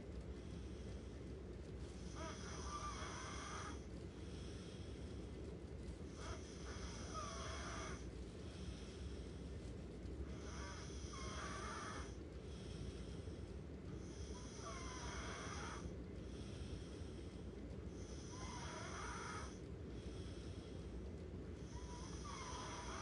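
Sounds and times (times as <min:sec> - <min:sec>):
snoring: 0:02.0 - 0:04.9, 0:06.1 - 0:09.1, 0:10.3 - 0:13.2, 0:13.9 - 0:20.8, 0:21.6 - 0:23.0.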